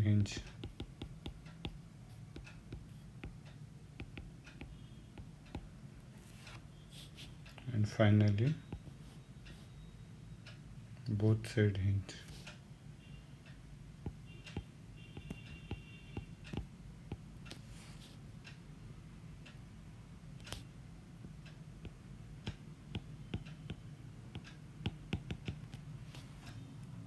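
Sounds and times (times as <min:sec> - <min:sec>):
pen clicks and taps: 0:00.3 - 0:03.4, 0:04.0 - 0:05.7, 0:14.0 - 0:17.6, 0:21.8 - 0:26.6.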